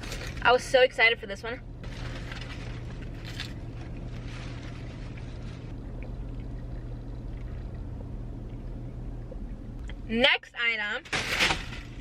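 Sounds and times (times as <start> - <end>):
car engine hum inside cabin: 0.0 - 12.0
faint rustling: 1.8 - 5.8.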